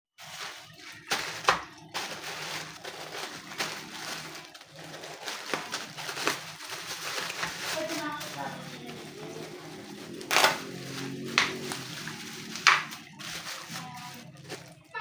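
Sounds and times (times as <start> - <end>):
packaging crinkling and rustling: 0.2 - 15.0
packaging snap: 10.2 - 11.9.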